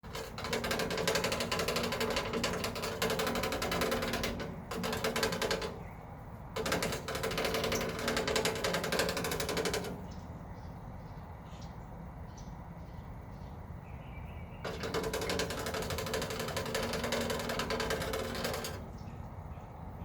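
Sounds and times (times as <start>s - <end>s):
fast rattling on a metal downspout: 0.0s - 10.6s, 14.5s - 19.6s.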